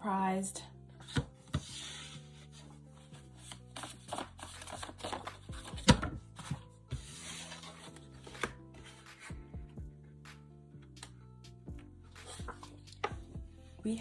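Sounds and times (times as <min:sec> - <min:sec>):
soft background music: 0:00.0 - 0:14.0
cards tapping and rustling: 0:03.4 - 0:09.3.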